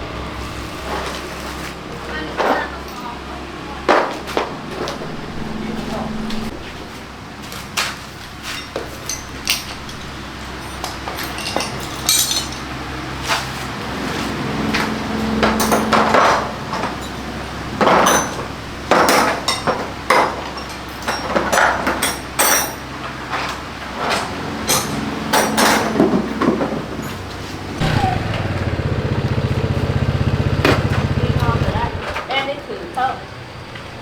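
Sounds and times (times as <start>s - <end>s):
metallic knocks and clinks of tools: 8.5s - 12.8s, 15.5s - 22.8s.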